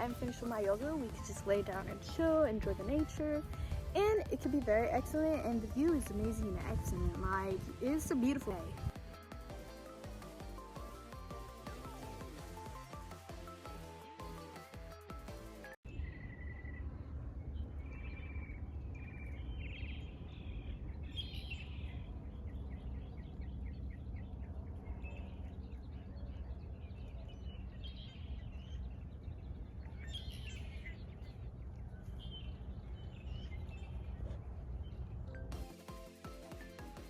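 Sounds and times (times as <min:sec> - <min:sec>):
low outdoor rumble: 0:00.0 - 0:14.0, 0:15.8 - 0:35.6
background music: 0:00.0 - 0:15.8, 0:35.3 - 0:37.0
songbirds chirping and singing: 0:17.5 - 0:35.2.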